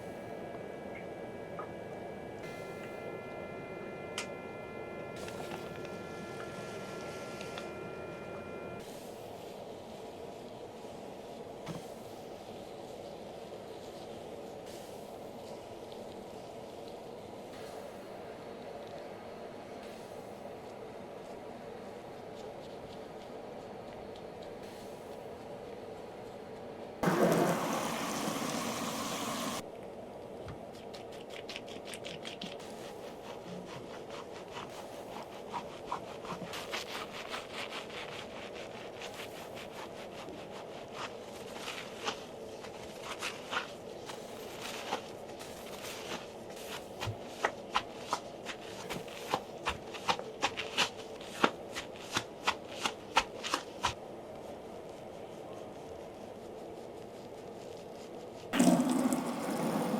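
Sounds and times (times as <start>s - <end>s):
steady low hum: 0.0s - 30.8s
hands scrubbing hair: 27.0s - 29.6s, 30.6s - 59.9s.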